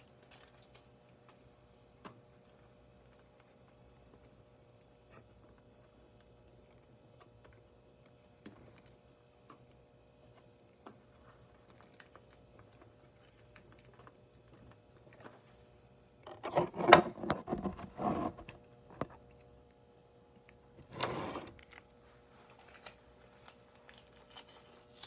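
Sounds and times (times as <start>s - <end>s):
tape rasping and crinkling: 16.3s - 19.2s.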